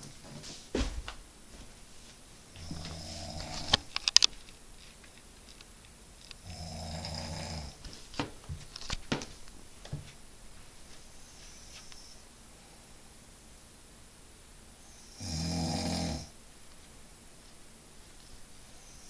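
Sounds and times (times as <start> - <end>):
man snoring: 2.6 - 3.9, 6.4 - 7.8, 15.1 - 16.3.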